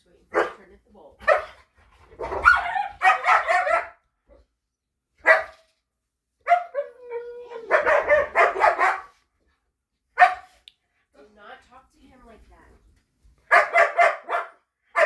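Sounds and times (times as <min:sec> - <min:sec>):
dog barking: 0:00.3 - 0:00.6, 0:01.2 - 0:01.6, 0:02.2 - 0:04.0, 0:05.2 - 0:05.6, 0:06.4 - 0:06.9, 0:07.7 - 0:09.2, 0:10.2 - 0:10.6, 0:13.5 - 0:15.0
dog yelping: 0:02.2 - 0:04.0, 0:06.5 - 0:09.1.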